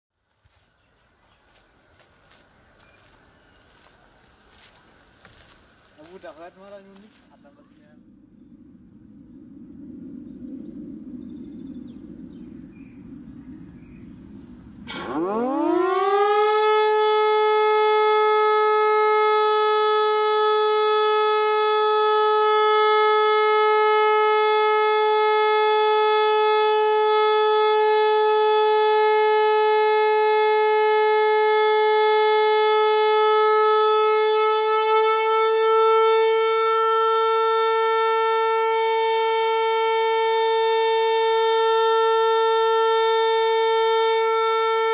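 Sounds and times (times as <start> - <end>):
civil defence siren: 1.4 - 44.9
low background rumble: 6.6 - 14.9.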